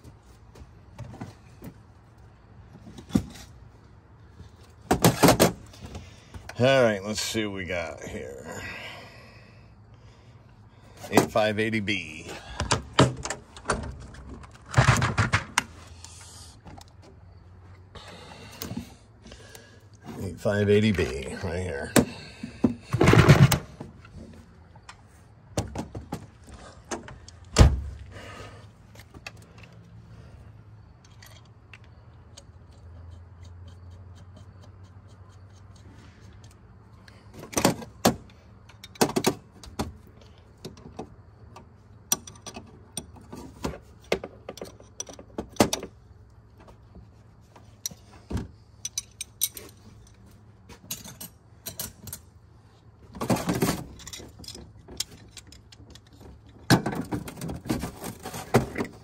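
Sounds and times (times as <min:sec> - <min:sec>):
metal tools clinking: 0:48.8 - 0:52.3, 0:53.2 - 0:56.2
metal parts rattling: 0:53.2 - 0:59.0.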